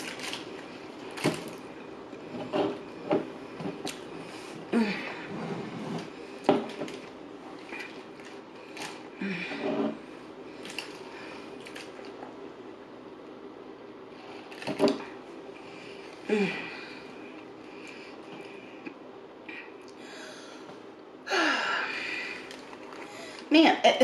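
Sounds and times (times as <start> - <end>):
food wrappers rustling and tapping: 0.0 - 1.7.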